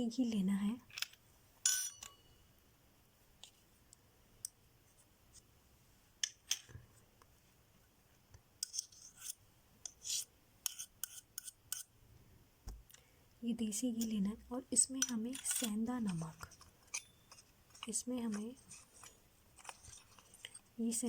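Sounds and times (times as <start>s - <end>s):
kitchen utensils clicking and scraping: 0.9s - 2.2s, 14.8s - 20.7s.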